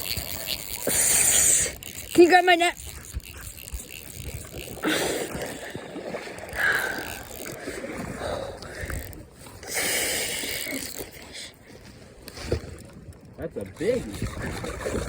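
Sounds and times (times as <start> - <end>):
fishing reel drag ratcheting: 0.0 - 11.6.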